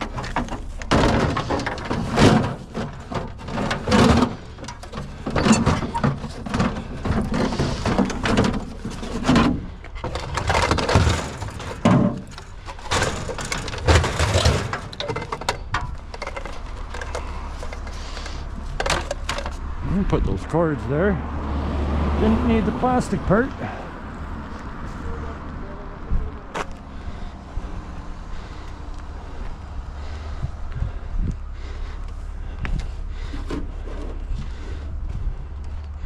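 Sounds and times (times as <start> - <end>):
knocking and clattering: 0.0 - 19.7
steady low noise: 23.8 - 36.0.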